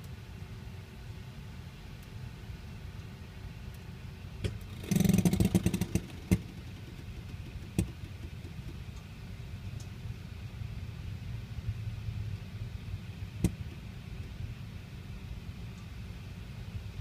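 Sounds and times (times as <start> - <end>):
low steady hum: 0.0 - 17.0
metallic knocking from hot engine: 4.5 - 8.8.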